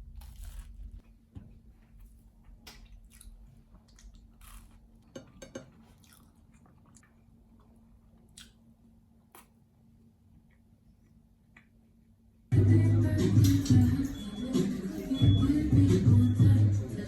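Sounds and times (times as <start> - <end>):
faint chewing and crunching: 0.0 - 1.2, 1.8 - 11.9.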